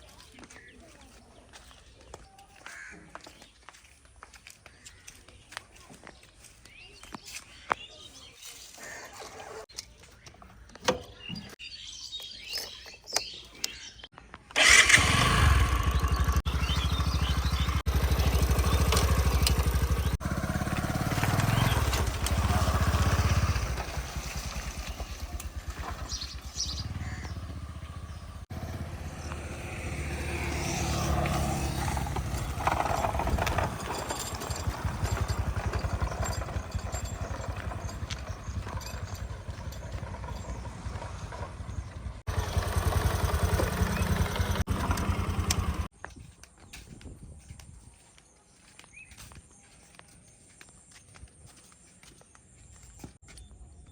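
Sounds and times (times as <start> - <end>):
diesel engines knocking: 15.7 - 45.9.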